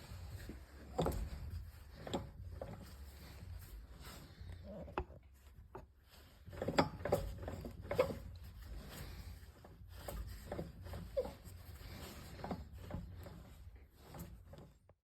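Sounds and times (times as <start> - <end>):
prop shaft clunking and knocking: 0.4 - 4.0.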